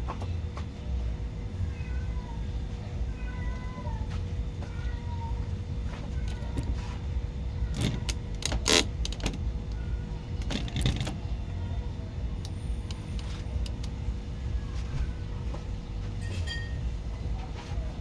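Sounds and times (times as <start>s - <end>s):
car engine running with whine: 0.0s - 18.0s
sharp metallic clinks: 16.2s - 16.9s.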